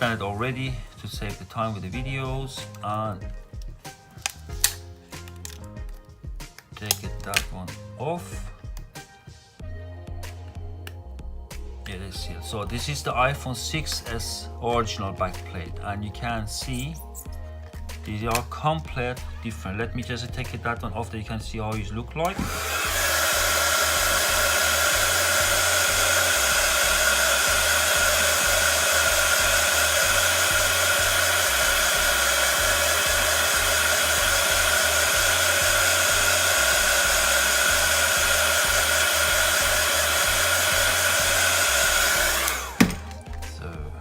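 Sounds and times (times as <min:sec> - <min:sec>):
hot-air blower whining: 0:00.0 - 0:00.9, 0:22.2 - 0:43.8.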